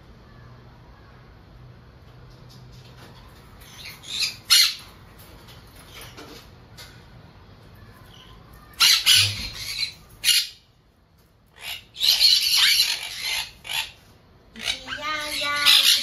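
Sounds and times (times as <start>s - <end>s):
parrot squawking: 3.6s - 4.9s, 8.6s - 10.7s, 11.5s - 16.0s.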